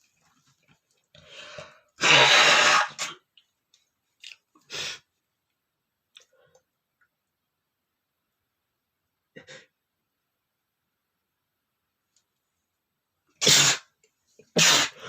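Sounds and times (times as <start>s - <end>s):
man sneezing loudly: 2.0s - 3.2s, 13.4s - 13.9s, 14.5s - 15.0s.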